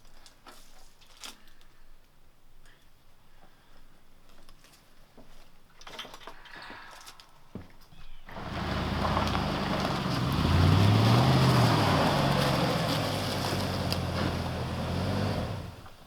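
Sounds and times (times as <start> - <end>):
rushing road noise: 8.3 - 16.0
truck engine running: 8.3 - 16.0.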